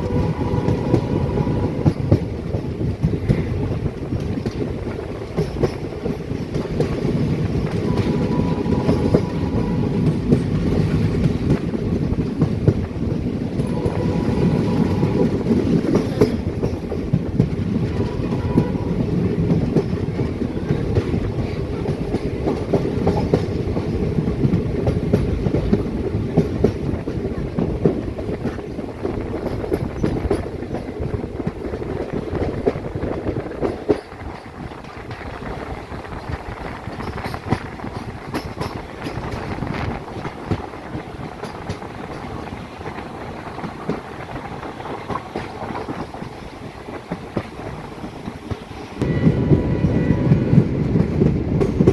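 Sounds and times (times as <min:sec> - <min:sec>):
train horn blasts: 0:00.0 - 0:02.2, 0:07.7 - 0:11.1, 0:13.6 - 0:16.4, 0:17.8 - 0:19.6, 0:49.0 - 0:51.0
train rumble: 0:00.0 - 0:51.9
wheels clicking over rail joints: 0:01.8 - 0:13.9, 0:15.0 - 0:49.6.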